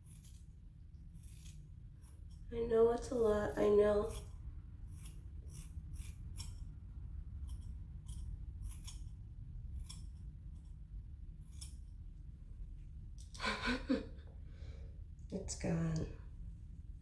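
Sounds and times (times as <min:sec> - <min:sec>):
scissors cutting hair: 0:00.0 - 0:06.7, 0:07.4 - 0:12.0
low steady hum: 0:00.0 - 0:17.0.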